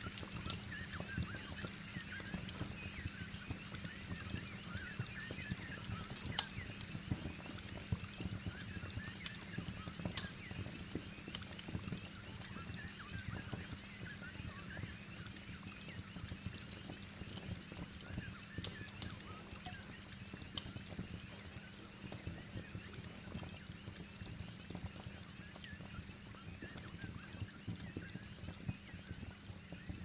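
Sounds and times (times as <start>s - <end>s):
steady rain: 0.0s - 30.0s
wood fire crackling: 0.0s - 30.0s
sharp fire pops: 0.1s - 13.7s, 15.3s - 24.5s.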